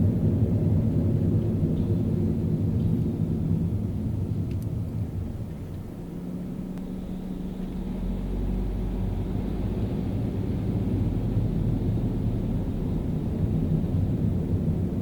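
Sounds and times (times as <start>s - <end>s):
car engine and road rumble: 0.0s - 15.0s.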